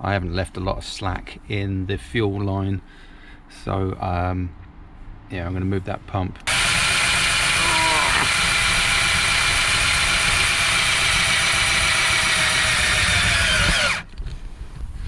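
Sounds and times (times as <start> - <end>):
power tool motor running: 6.5 - 14.1.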